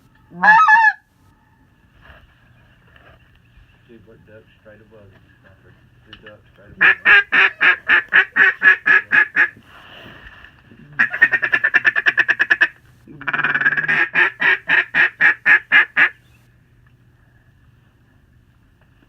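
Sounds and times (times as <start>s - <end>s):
duck call quacking: 0.3s - 1.0s, 6.8s - 9.6s, 11.0s - 16.2s.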